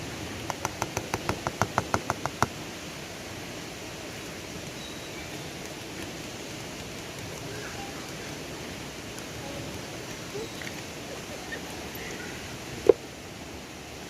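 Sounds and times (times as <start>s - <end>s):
river water flowing: 0.0s - 14.0s.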